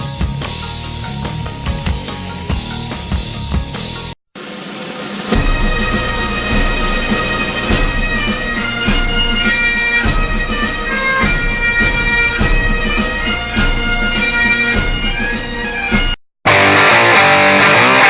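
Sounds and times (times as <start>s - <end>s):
drums beating: 0.0s - 18.0s
bagpipes playing a march: 5.3s - 18.0s.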